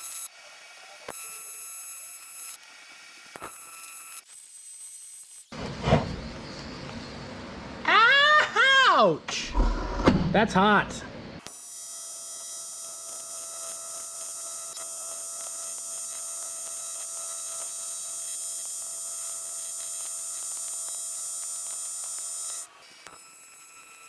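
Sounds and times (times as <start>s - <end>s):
welding arc buzzing with high whine: 0.0s - 5.6s, 11.4s - 24.0s.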